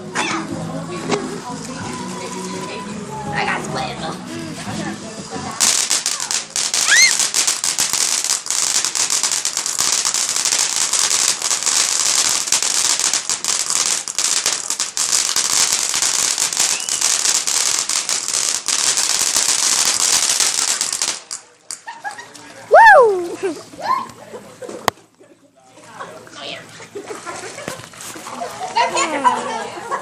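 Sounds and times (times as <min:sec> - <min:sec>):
fireworks crackling: 0:04.6 - 0:23.6.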